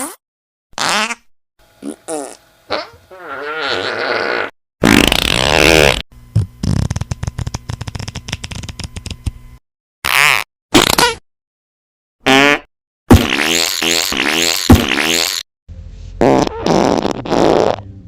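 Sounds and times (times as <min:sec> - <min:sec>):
fart sound effects: 0:00.8 - 0:08.8, 0:10.0 - 0:11.2, 0:12.2 - 0:15.5, 0:16.2 - 0:17.9.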